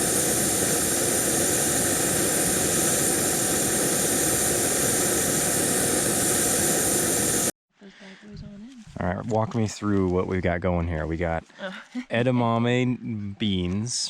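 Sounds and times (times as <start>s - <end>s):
gas stove roaring: 0.0s - 7.5s.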